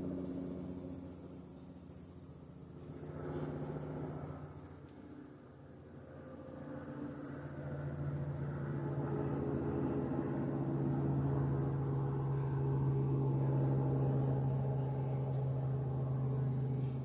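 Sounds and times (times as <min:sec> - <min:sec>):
low droning hum: 0:00.0 - 0:17.0
small bird chirping: 0:00.8 - 0:02.3.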